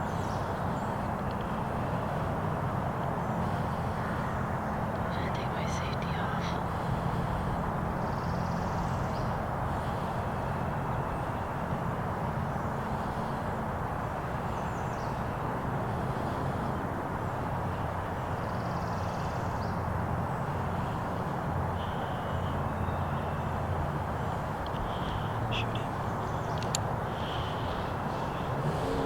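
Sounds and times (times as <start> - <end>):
faint bird calls: 21.8 - 29.0
low hum: 26.6 - 29.0.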